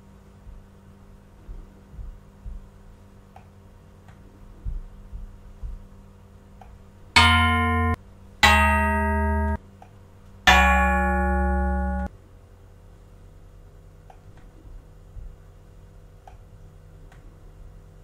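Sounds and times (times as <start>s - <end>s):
synthetic guitar-like notes: 7.2s - 9.6s, 10.5s - 12.1s.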